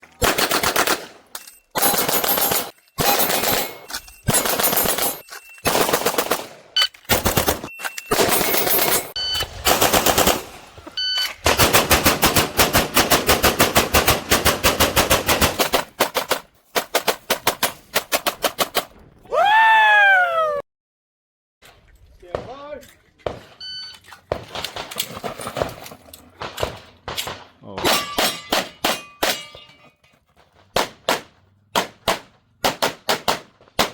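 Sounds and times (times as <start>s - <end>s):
pistol shots: 26.4s - 29.4s, 30.8s - 33.9s.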